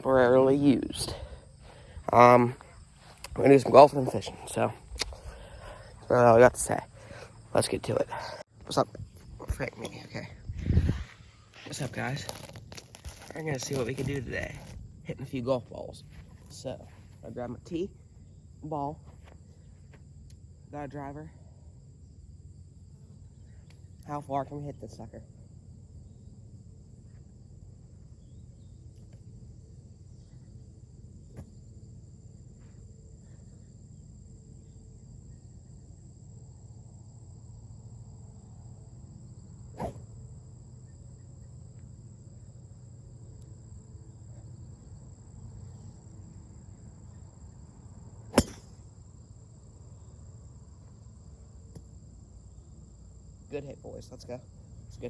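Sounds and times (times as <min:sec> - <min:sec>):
insects trilling: 0:00.0 - 0:55.0
golf club striking ball: 0:48.3 - 0:48.8.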